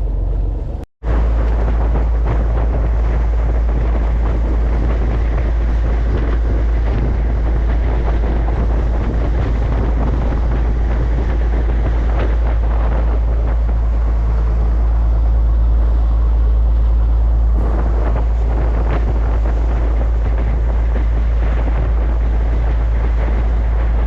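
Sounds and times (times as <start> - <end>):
engine running: 0.0 - 24.0
wind rumble on microphone: 0.0 - 24.0.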